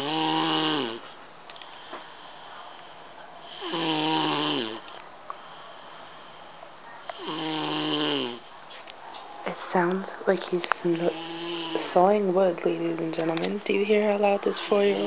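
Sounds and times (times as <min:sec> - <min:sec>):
child snoring: 0:00.0 - 0:01.0, 0:03.5 - 0:04.9, 0:07.1 - 0:08.5, 0:11.0 - 0:12.0.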